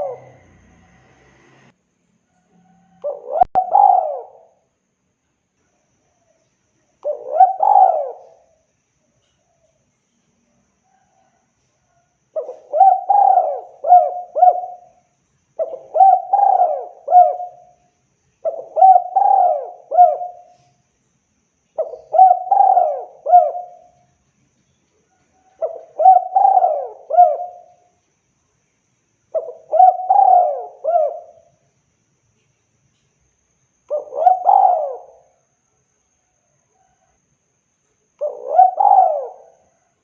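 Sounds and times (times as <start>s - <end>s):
dove cooing: 0.0s - 1.0s, 2.6s - 4.6s, 7.0s - 8.6s, 12.3s - 15.0s, 15.6s - 17.8s, 18.4s - 20.7s, 21.8s - 24.0s, 25.4s - 27.9s, 29.3s - 31.6s, 33.9s - 35.4s, 38.2s - 39.9s.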